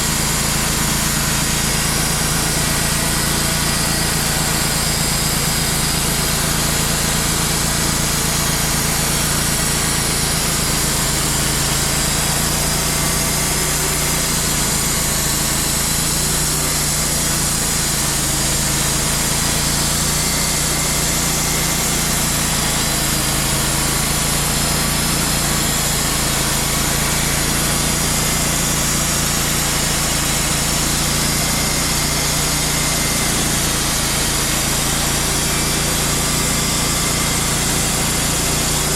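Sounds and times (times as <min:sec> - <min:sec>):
band sawmill sawing log: 0:00.0 - 0:38.9.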